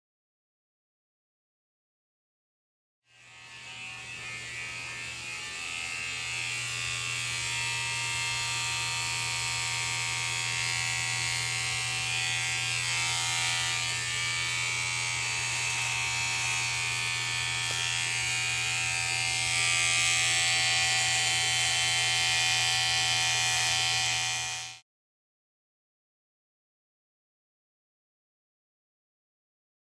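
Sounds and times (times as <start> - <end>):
electric hair clippers buzzing: 3.1 - 24.8.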